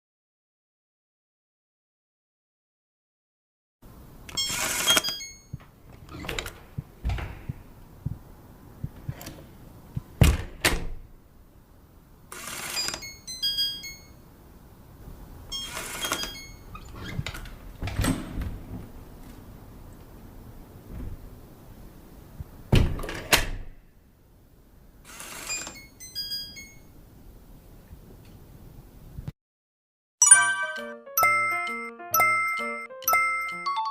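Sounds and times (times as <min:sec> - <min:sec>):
mechanical lock noise: 0:04.2 - 0:07.5, 0:12.3 - 0:14.2, 0:15.5 - 0:18.4, 0:25.0 - 0:26.8
electronic door lock beeps: 0:04.3 - 0:06.5, 0:12.4 - 0:14.2, 0:15.5 - 0:16.8, 0:25.1 - 0:26.9
lock and handle clicks and clunks: 0:04.3 - 0:07.6, 0:09.0 - 0:11.1, 0:22.7 - 0:23.8.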